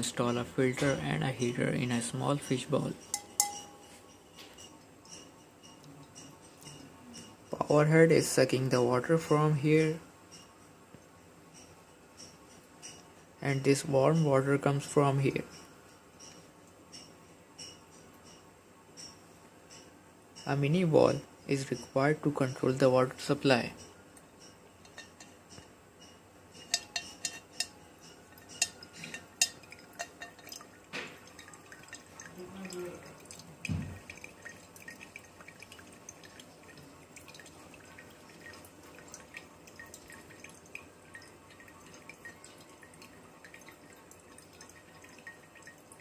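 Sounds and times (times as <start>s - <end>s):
water dripping into bowl: 2.5s - 7.6s, 23.7s - 46.0s.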